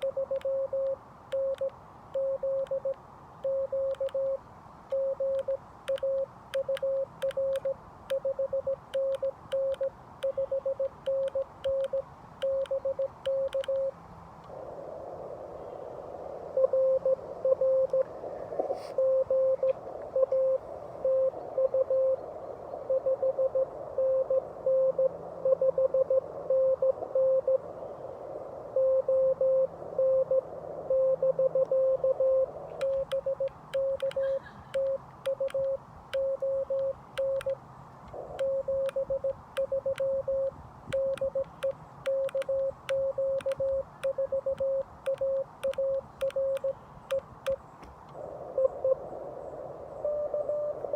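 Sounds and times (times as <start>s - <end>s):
sharp keying clicks: 0.0s - 4.2s, 4.9s - 13.9s, 32.8s - 47.9s
morse code tone: 0.0s - 13.9s, 16.6s - 18.0s, 19.0s - 22.2s, 28.8s - 37.6s, 38.4s - 47.3s, 50.0s - 50.8s
radio band hiss: 14.5s - 25.5s.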